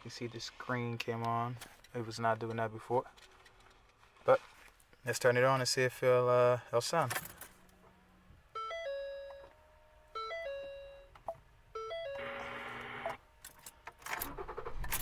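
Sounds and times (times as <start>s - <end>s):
car warning chime: 8.6s - 13.2s.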